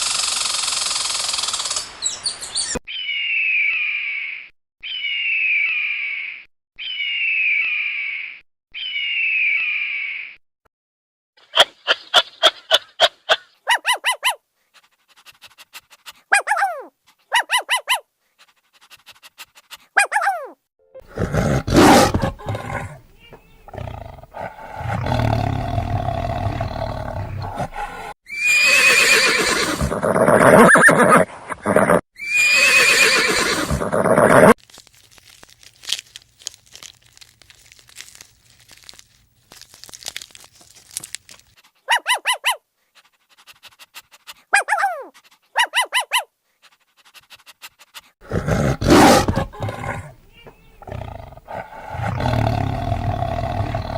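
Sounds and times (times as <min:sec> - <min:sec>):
animal calls: 0:20.0 - 0:34.6, 0:41.9 - 0:42.6, 0:48.2 - 0:53.9.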